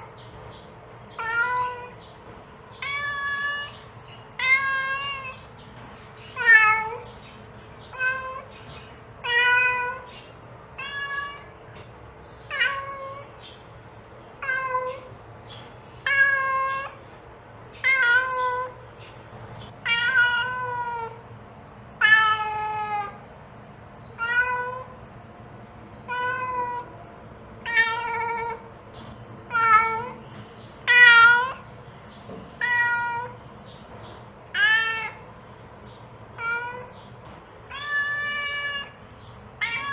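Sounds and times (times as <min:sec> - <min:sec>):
cat meowing: 0:01.1 - 0:02.0, 0:02.7 - 0:05.5, 0:06.3 - 0:07.0, 0:07.8 - 0:08.6, 0:09.2 - 0:10.1, 0:10.8 - 0:11.7, 0:12.5 - 0:13.4, 0:14.4 - 0:15.1, 0:16.0 - 0:17.0, 0:17.8 - 0:18.8, 0:19.8 - 0:21.2, 0:22.0 - 0:23.2, 0:24.2 - 0:25.0, 0:26.0 - 0:26.9, 0:27.6 - 0:28.7, 0:29.4 - 0:30.2, 0:30.8 - 0:31.7, 0:32.6 - 0:33.4, 0:34.5 - 0:35.4, 0:36.4 - 0:37.0, 0:37.7 - 0:39.0, 0:39.6 - 0:39.9.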